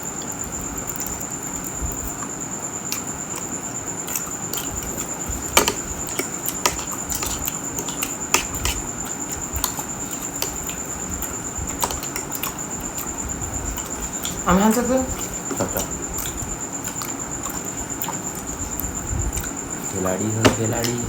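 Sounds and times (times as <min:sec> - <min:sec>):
steady high-pitched whine: 0:00.0 - 0:21.0
chewing and utensil clicks: 0:02.2 - 0:13.2, 0:13.8 - 0:19.8.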